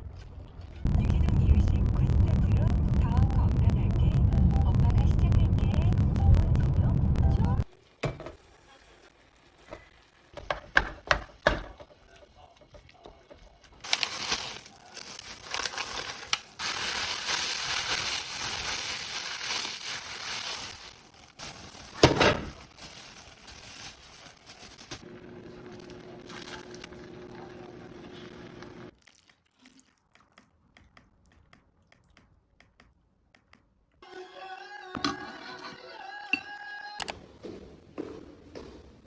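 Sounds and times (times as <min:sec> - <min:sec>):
steady low hum: 0:00.8 - 0:07.6
loud crinkling crushing noise: 0:13.5 - 0:28.9.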